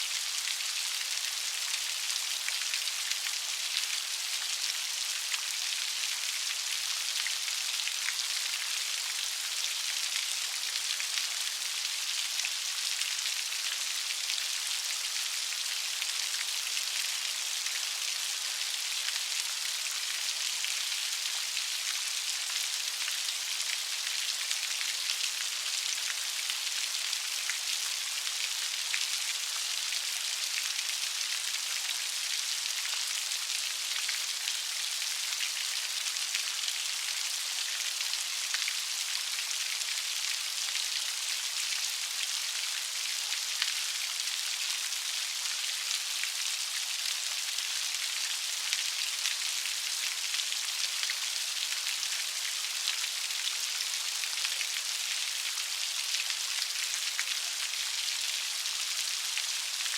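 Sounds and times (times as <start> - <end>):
light rain pattering: 0.0 - 59.9.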